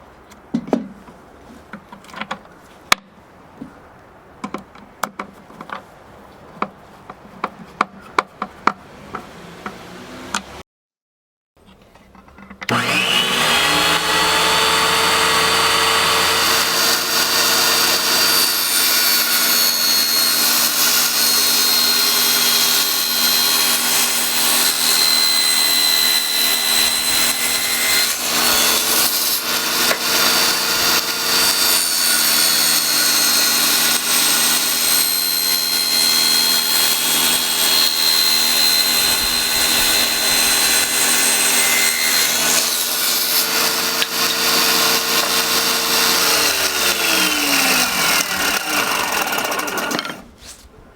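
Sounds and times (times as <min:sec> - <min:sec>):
circular saw motor whining: 0:12.7 - 0:50.2.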